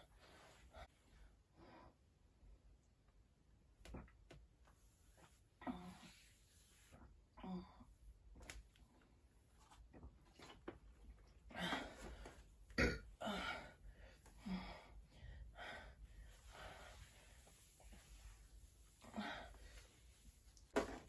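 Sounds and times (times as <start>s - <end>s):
baby burping: 12.8s - 13.0s.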